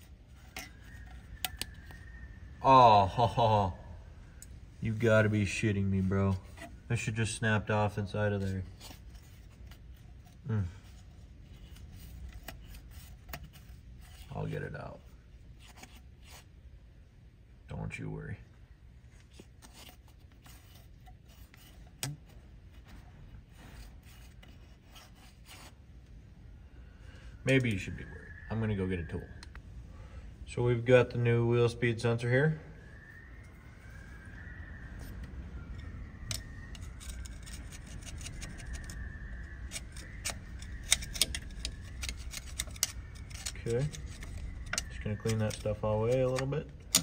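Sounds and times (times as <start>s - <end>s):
light scraping and fiddling: 0.0s - 3.6s, 4.2s - 16.7s, 19.0s - 28.4s, 32.9s - 47.0s
low steady hum: 0.0s - 47.0s
clicking and rattling of small parts: 35.8s - 47.0s.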